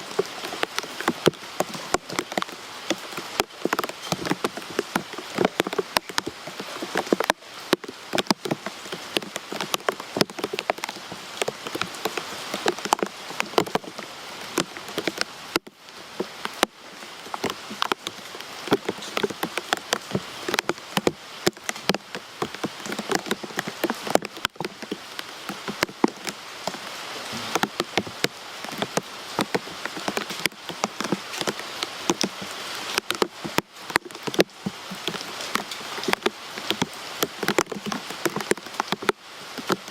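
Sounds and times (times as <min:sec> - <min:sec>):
rain drops pattering: 0:00.0 - 0:39.9.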